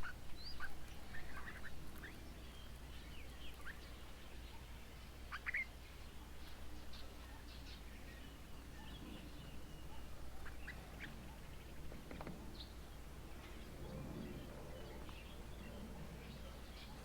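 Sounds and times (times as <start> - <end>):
bird chirps and calls: 0.0 - 11.9.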